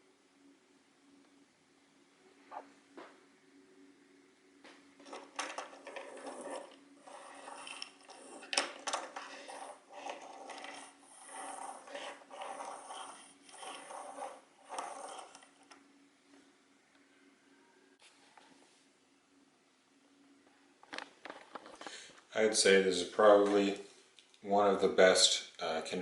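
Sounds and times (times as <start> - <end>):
plastic toy scraping and rustling: 5.0 - 15.8.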